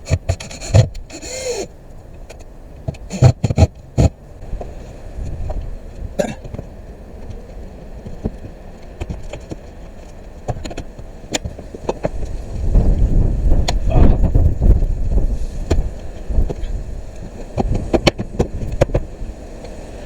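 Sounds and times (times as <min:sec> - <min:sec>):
sharp knocks and clicks: 0:00.0 - 0:01.4, 0:02.2 - 0:04.2
wind buffeting microphone: 0:02.6 - 0:20.0.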